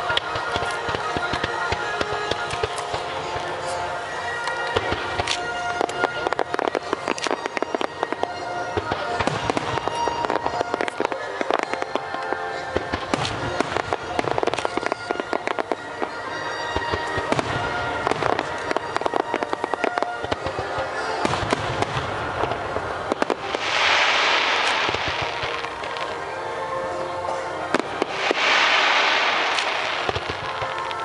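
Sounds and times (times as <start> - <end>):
fireworks bangs and pops: 0.0 - 26.8, 27.7 - 31.0
fireworks hiss: 0.0 - 31.0
music: 0.0 - 31.0.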